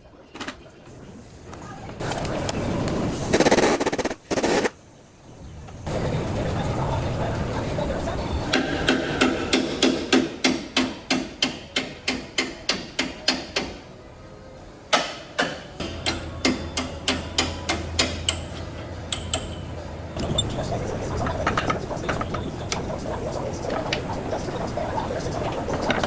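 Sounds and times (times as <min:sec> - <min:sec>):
hammer blows on metal: 0:14.9 - 0:20.5.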